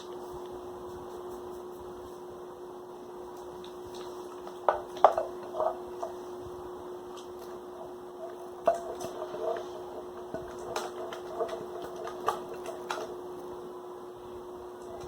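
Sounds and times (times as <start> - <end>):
spoon scraping a pot: 7.7 - 13.2.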